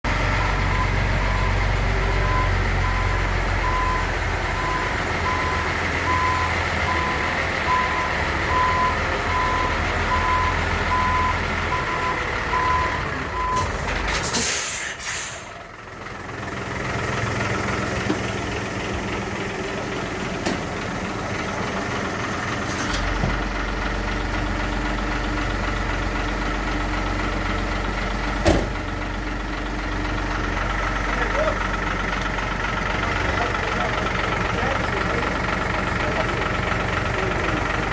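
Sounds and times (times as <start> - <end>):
diesel engine running: 0.0 - 37.9
reversing alarm beeping: 0.2 - 13.8
air brake hiss: 13.8 - 15.6.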